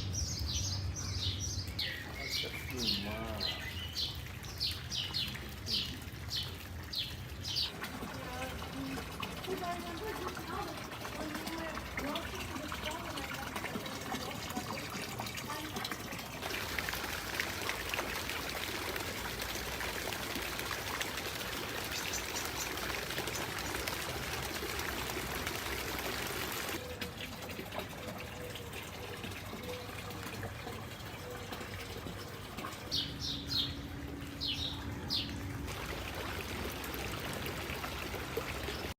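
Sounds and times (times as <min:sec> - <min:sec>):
birds chirping: 0:00.0 - 0:08.4, 0:21.4 - 0:24.3, 0:30.8 - 0:35.6
fountain water trickling and splashing: 0:00.0 - 0:38.9.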